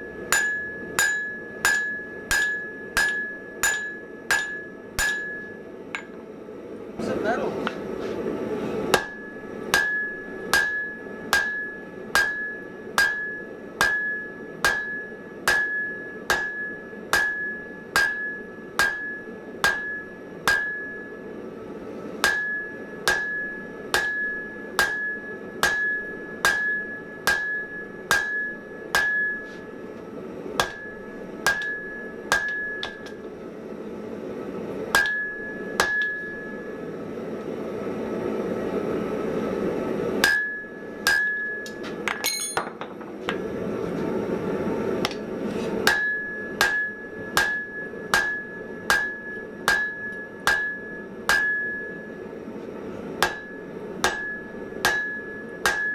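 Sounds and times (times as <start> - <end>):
hammer striking steel on anvil: 0.0 - 6.2, 8.9 - 21.2, 22.2 - 29.9, 30.6 - 33.3, 34.9 - 36.7, 40.2 - 43.4, 45.0 - 52.2, 53.2 - 55.9
anvil ringing: 0.2 - 6.2, 9.0 - 21.1, 22.2 - 29.5, 30.6 - 33.2, 35.0 - 36.7, 40.2 - 43.0, 45.9 - 52.2, 53.2 - 55.9.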